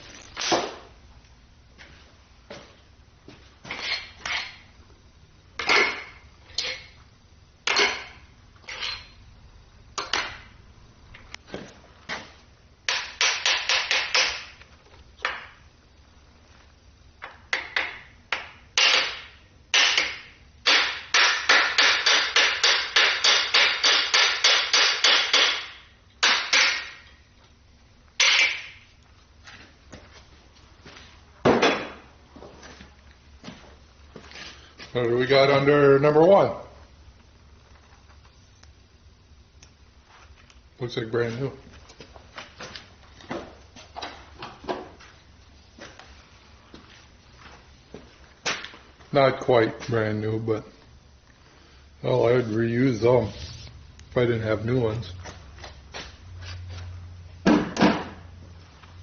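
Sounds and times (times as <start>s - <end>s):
air impact wrench hammering: 12.9s - 14.6s, 17.5s - 27.1s.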